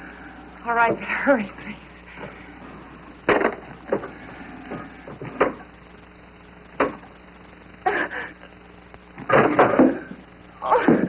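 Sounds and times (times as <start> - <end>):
faint steady hum: 0.0 - 11.0
sharp knocks: 3.3 - 4.1.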